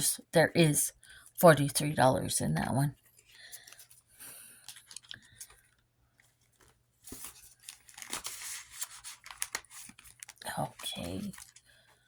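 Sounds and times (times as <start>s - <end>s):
paper money rustling: 3.1s - 12.0s.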